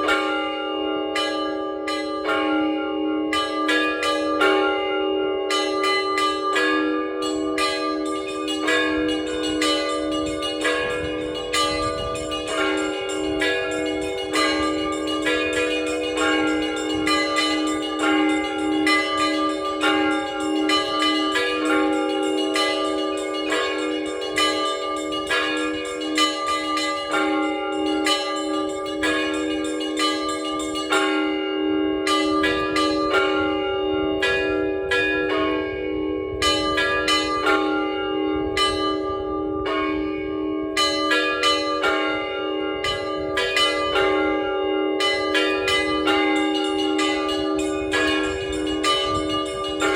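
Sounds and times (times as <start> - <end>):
deep bell ringing: 0.0 - 49.9
small high bells struck quickly: 45.0 - 49.9.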